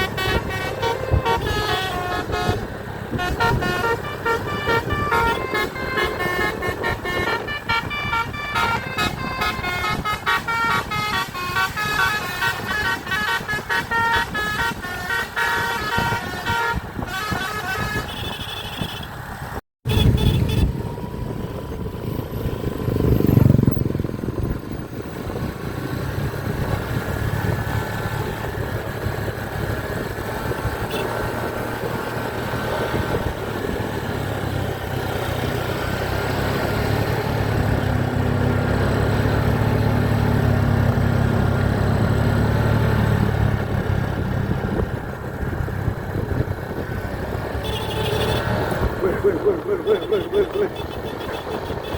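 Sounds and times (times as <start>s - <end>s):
bus horn playing a tune: 0.0s - 19.2s, 19.9s - 20.8s, 28.2s - 34.5s, 47.4s - 51.9s
vehicle engine and traffic noise: 0.0s - 51.9s.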